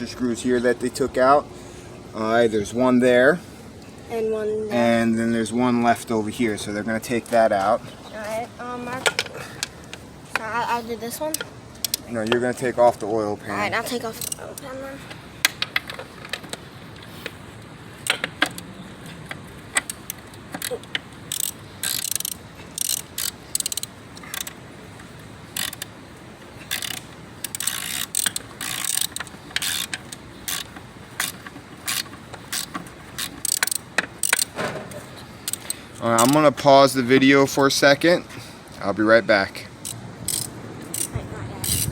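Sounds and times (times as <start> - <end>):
ratchet wrench clicking: 14.2 - 14.4, 19.8 - 24.6, 25.6 - 25.9, 26.7 - 34.5, 35.4 - 36.3, 39.8 - 41.9.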